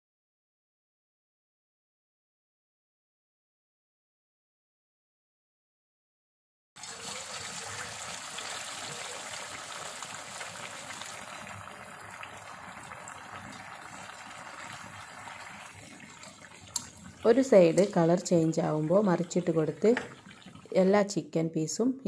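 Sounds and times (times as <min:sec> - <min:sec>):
chicken sizzling in hot oil: 0:06.8 - 0:20.8.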